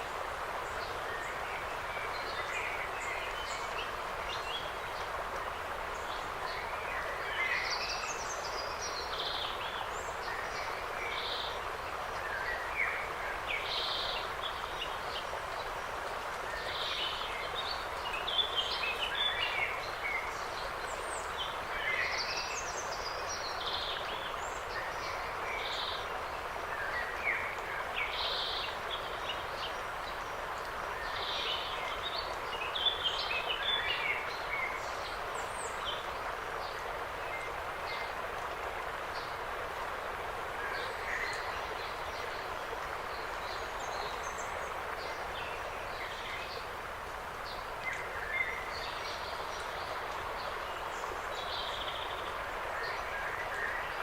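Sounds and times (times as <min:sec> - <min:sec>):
forest birds singing: 0:00.0 - 0:15.9, 0:16.5 - 0:39.4, 0:40.6 - 0:54.0
steady background hiss: 0:00.0 - 0:54.0.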